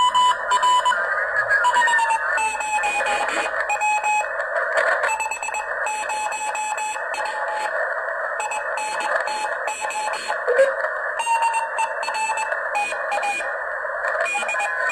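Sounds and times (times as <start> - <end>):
morse code tone: 0.0 - 4.3, 5.1 - 7.7, 8.4 - 13.5, 14.2 - 14.9
radio band noise hiss: 0.0 - 14.9.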